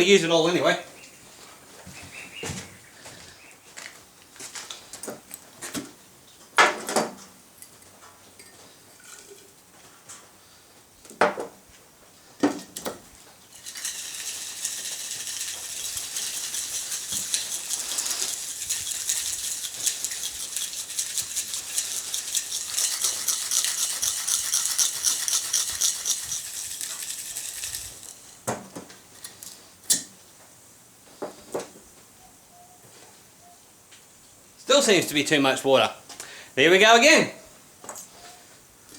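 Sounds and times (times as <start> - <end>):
jar rattling while shaken: 13.5 - 28.4.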